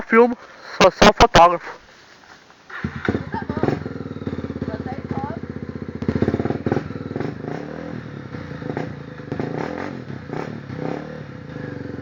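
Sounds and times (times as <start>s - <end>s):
motorcycle engine revving: 2.8s - 12.0s.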